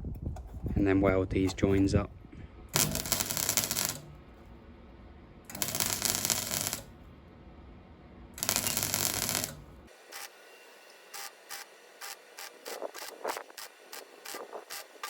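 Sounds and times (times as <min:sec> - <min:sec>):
spot welder bursts: 0:02.7 - 0:04.2, 0:05.5 - 0:06.9, 0:08.4 - 0:15.0.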